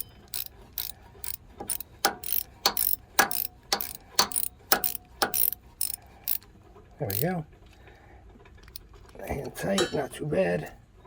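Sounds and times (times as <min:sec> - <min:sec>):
sharp metallic clicks with scrape: 0:00.0 - 0:06.5, 0:07.1 - 0:07.3.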